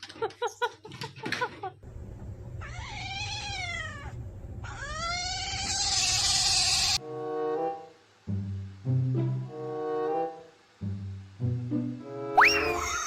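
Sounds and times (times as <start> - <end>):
cat meowing: 2.6 - 7.0.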